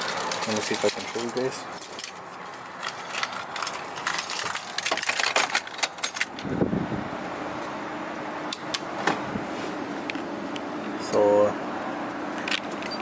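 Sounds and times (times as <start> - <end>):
keys jangling and clicking: 0.0 - 6.4
truck engine humming: 0.0 - 13.0.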